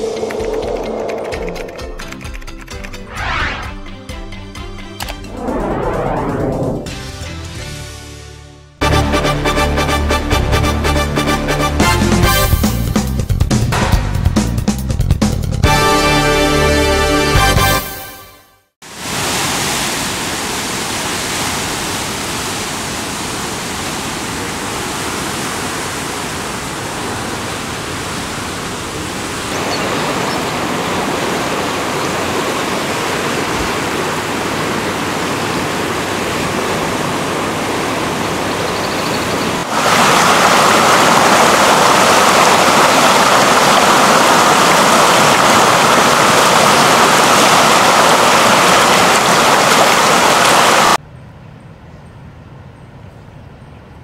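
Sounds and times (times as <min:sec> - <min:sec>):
floodwater rushing: 0:18.9 - 0:51.0.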